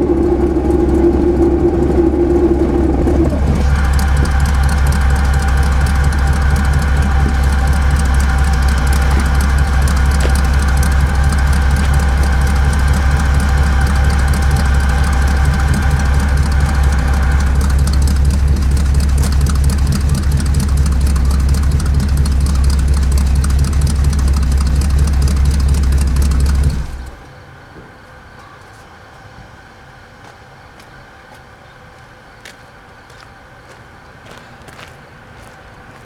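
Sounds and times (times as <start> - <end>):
higher steady tone: 0.0 - 27.3
truck engine idling: 0.0 - 36.0.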